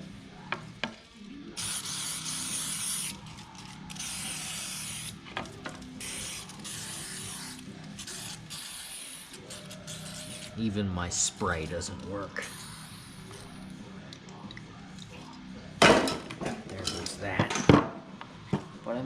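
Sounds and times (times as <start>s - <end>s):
aerosol can spraying: 1.6s - 3.3s, 3.9s - 5.2s, 6.0s - 10.6s, 12.4s - 13.6s.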